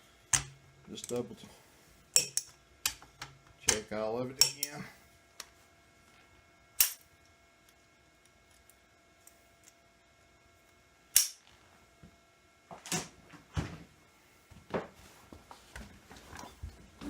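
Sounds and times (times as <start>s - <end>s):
hand tools clicking on metal: 4.4s - 4.8s.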